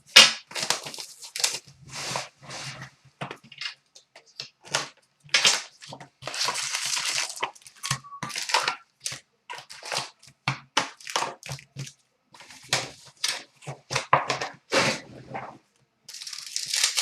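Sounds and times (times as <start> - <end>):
card pack wrappers crinkling: 0.2 - 2.3, 4.6 - 14.6, 16.1 - 17.0.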